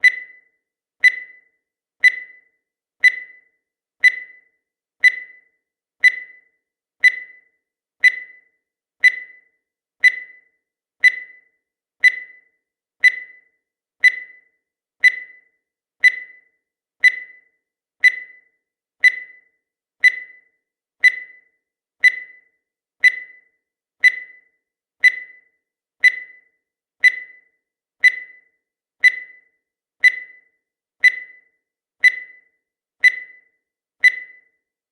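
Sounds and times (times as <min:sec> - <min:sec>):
short high timer beeps: 0:00.0 - 0:15.4, 0:16.0 - 0:21.4, 0:28.0 - 0:34.5.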